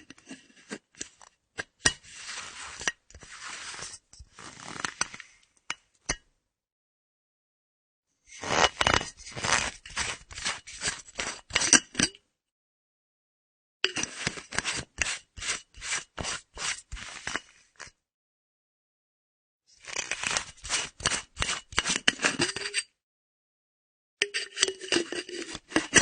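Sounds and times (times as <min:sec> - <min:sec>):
metal screw cap rasping on threads: 0:08.4 - 0:12.1, 0:13.9 - 0:16.4, 0:19.8 - 0:22.9, 0:24.2 - 0:26.0.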